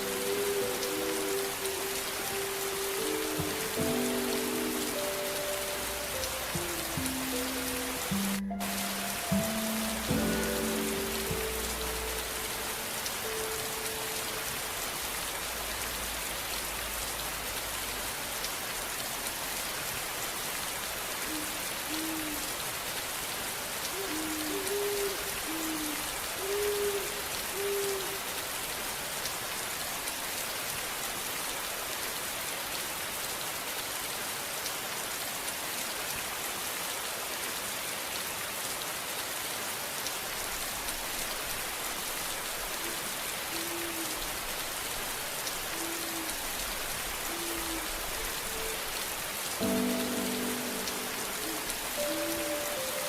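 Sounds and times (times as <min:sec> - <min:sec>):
soft low notes: 0:00.0 - 0:15.3, 0:49.6 - 0:53.0
steady rain falling: 0:00.0 - 0:53.0.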